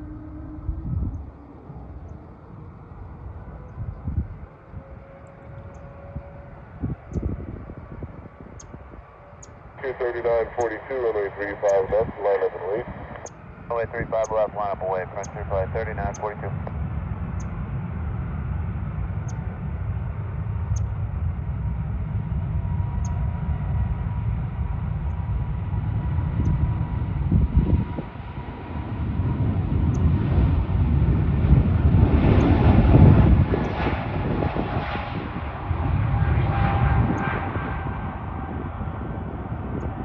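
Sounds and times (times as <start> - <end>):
jet engines rumbling at takeoff: 0.0 - 40.0.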